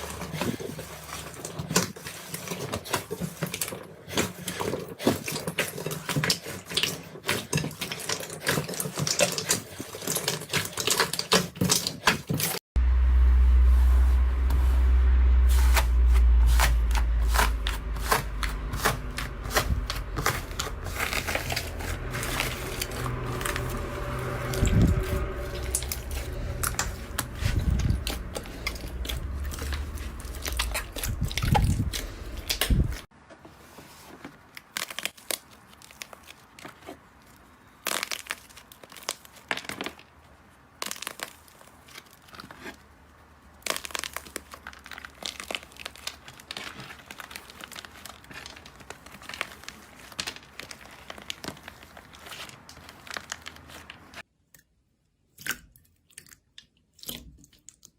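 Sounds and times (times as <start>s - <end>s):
slime crackling and popping: 15.6s - 33.1s, 34.6s - 42.8s, 43.5s - 54.3s.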